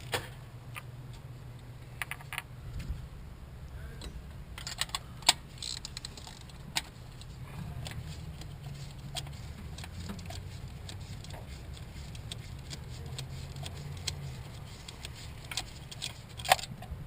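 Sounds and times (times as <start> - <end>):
steady low hum: 0.0 - 17.0
tools clicking and clinking: 4.6 - 16.9.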